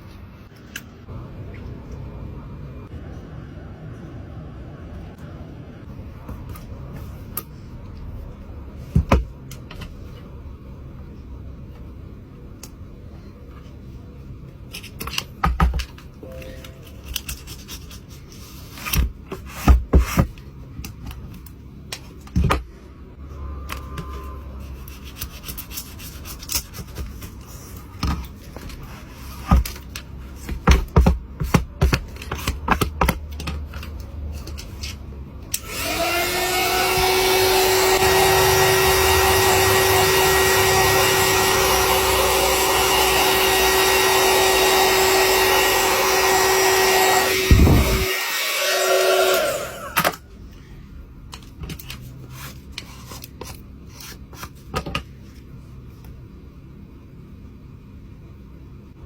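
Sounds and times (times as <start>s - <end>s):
hot-air blower motor running: 35.5s - 50.2s.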